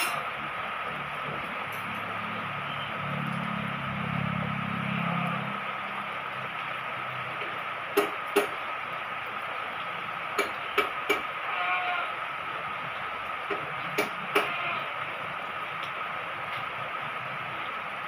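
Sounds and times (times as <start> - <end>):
steady rain hiss: 0.0 - 18.0
faint animal call: 11.4 - 12.2, 14.3 - 15.0.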